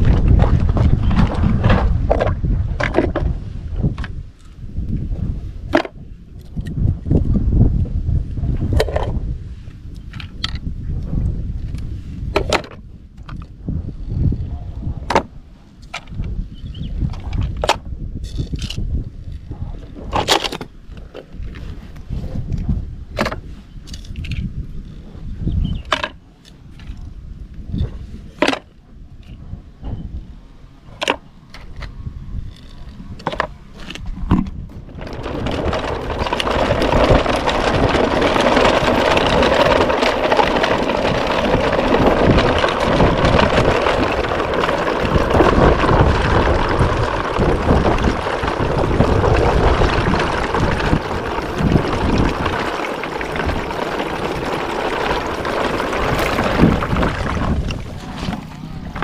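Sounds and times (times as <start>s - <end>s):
toy truck wheels rolling: 17.1s - 21.9s, 32.4s - 59.0s
plastic toy vehicles clicking: 17.4s - 21.4s, 32.5s - 59.0s.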